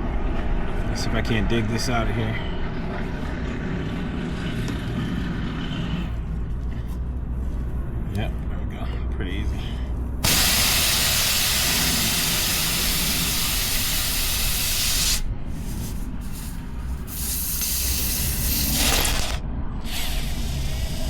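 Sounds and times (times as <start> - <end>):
air hissing from tyre: 10.2 - 21.0.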